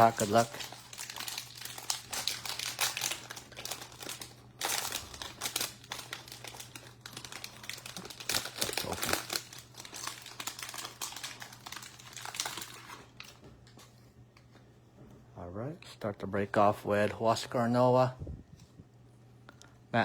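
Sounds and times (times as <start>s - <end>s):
wrapper crinkling: 0.0s - 13.8s.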